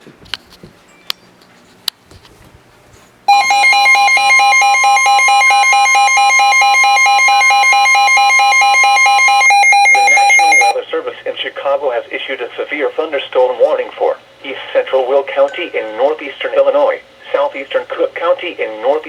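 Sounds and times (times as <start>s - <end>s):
loud electronic alert tone: 3.3s - 10.8s.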